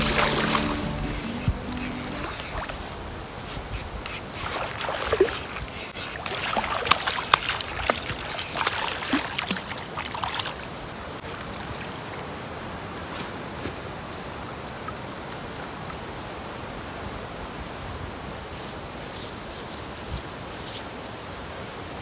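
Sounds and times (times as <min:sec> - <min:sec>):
creek water trickling: 0:00.0 - 0:12.5.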